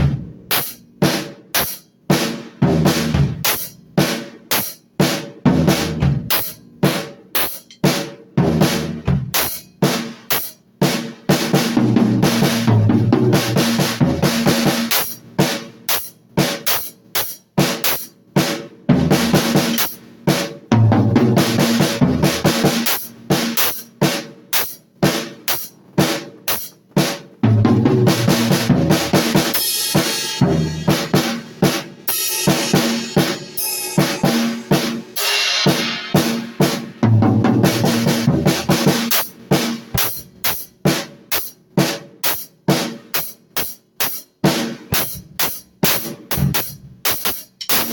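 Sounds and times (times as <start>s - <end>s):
snare drum hits: 39.8s - 40.2s.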